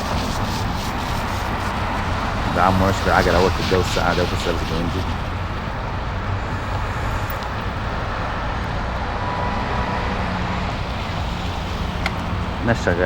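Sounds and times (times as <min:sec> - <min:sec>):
street traffic rumble: 0:00.0 - 0:13.0.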